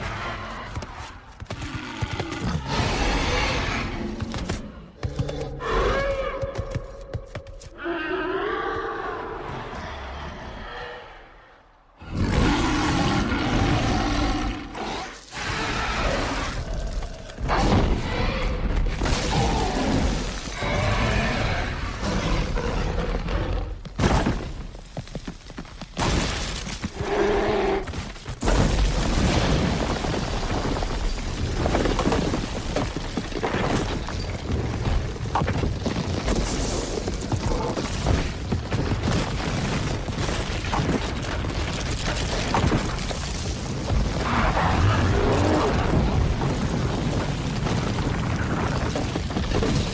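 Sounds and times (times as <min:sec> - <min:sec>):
creature roars and bellows: 0:07.8 - 0:23.7, 0:44.1 - 0:46.4.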